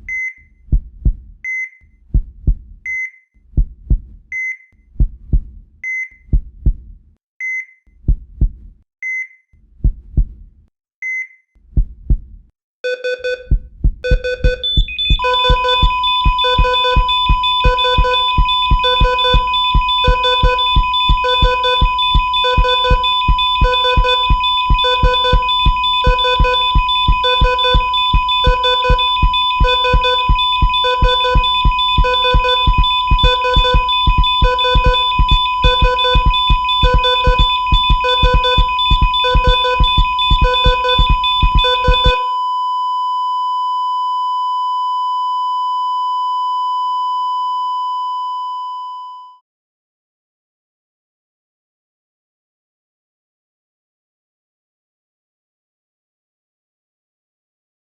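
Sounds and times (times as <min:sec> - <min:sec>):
heart monitor beeps: 0:00.0 - 0:00.6, 0:01.4 - 0:01.9, 0:02.9 - 0:03.2, 0:07.4 - 0:07.8, 0:09.0 - 0:09.4, 0:12.8 - 0:49.4
steady electronic tone: 0:14.6 - 0:42.2
long flatline tone: 0:14.6 - 0:49.4.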